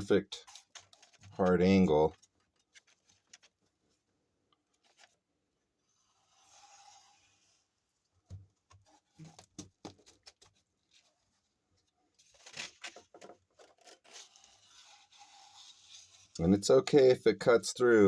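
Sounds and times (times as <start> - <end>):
sandpaper crinkling: 12.2 - 16.4
sandpaper scratchy rasping: 14.1 - 16.4.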